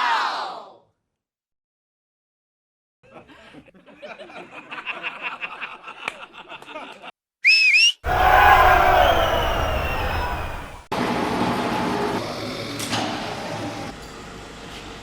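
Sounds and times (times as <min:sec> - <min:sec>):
loud dipping whistle: 0:07.4 - 0:10.9
sudden loud noisy burst: 0:08.0 - 0:10.9.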